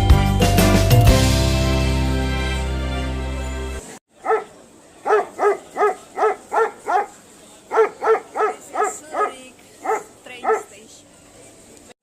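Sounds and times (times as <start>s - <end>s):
dog barking: 4.2s - 10.8s.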